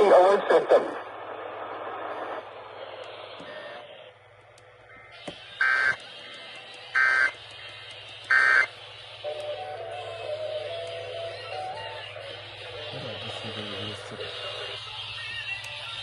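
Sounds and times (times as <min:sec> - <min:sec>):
music: 0:05.5 - 0:16.0
digital screech data tones: 0:05.6 - 0:06.0, 0:07.0 - 0:07.4, 0:08.3 - 0:08.7.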